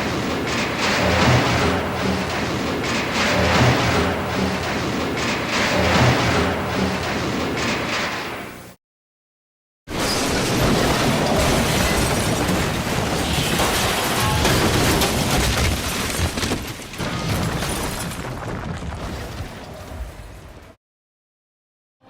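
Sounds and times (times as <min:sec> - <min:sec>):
explosion rumbling and crashing: 0:00.0 - 0:08.0, 0:09.9 - 0:20.8.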